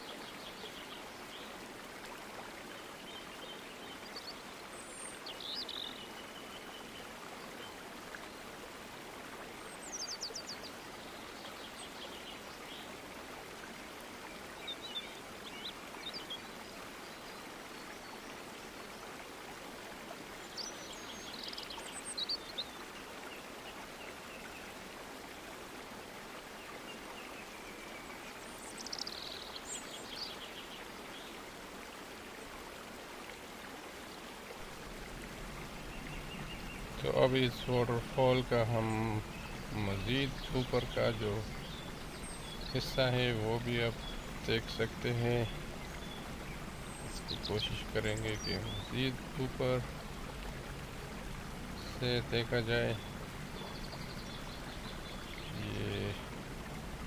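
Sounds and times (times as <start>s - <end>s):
birds chirping and trilling: 2.7s - 8.4s, 14.2s - 19.0s, 20.4s - 24.6s, 26.6s - 31.4s, 34.6s - 57.0s
waterfall rushing: 31.0s - 57.0s.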